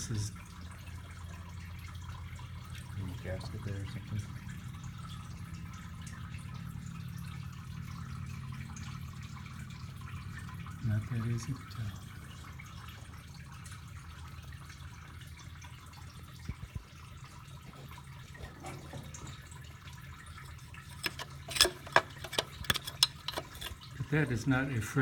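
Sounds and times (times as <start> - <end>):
steady low hum: 0.0 - 18.4.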